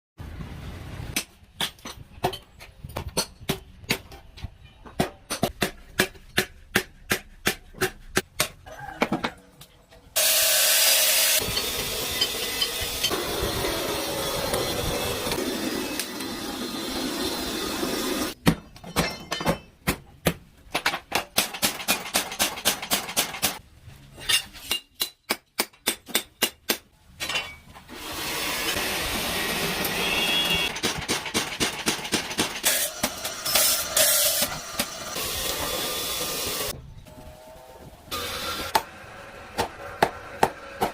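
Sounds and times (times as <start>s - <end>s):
power tool grinding blade: 10.2s - 18.4s, 32.6s - 36.7s, 38.1s - 40.8s
hammer striking steel on anvil: 11.4s - 13.2s.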